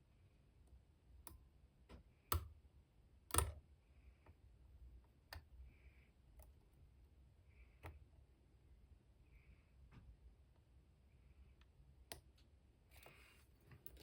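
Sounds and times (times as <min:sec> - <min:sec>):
lock pick clicking in padlock: 0:03.3 - 0:03.6.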